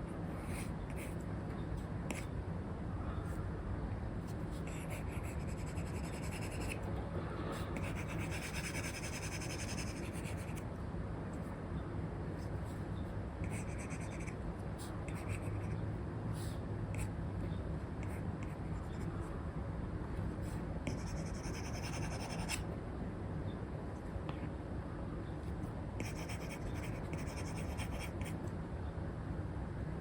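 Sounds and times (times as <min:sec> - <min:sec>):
low background noise: 0:00.0 - 0:30.0
stylus scratching on screen: 0:04.4 - 0:06.9, 0:07.6 - 0:10.6, 0:13.4 - 0:14.4, 0:20.9 - 0:22.6, 0:26.0 - 0:28.4.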